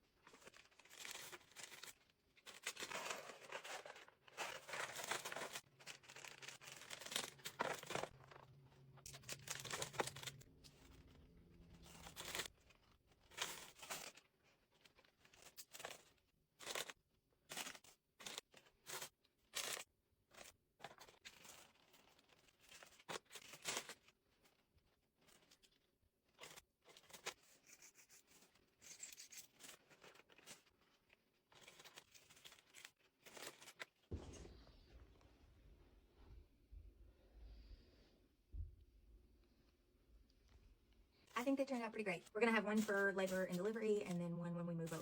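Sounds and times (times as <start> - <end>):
tissue paper rustling: 0.2 - 15.6.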